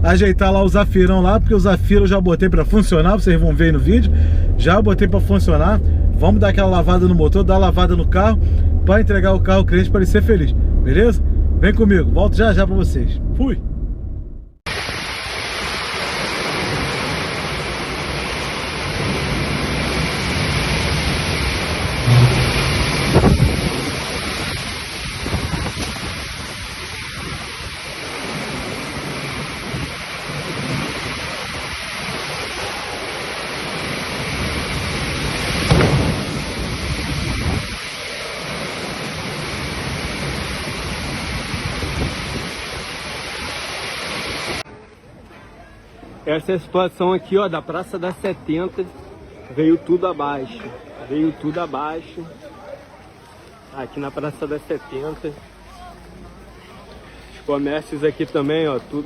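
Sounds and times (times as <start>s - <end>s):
heavy rain pouring: 0.0s - 11.6s, 14.7s - 44.7s
thunder: 18.9s - 26.2s, 34.6s - 37.8s.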